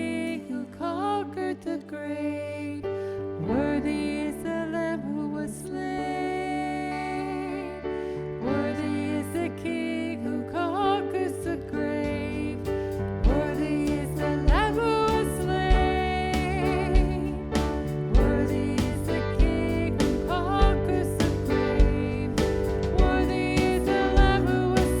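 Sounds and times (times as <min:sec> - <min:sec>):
worship band music: 0:11.5 - 0:25.0
heavy bass drum hits: 0:13.2 - 0:25.0.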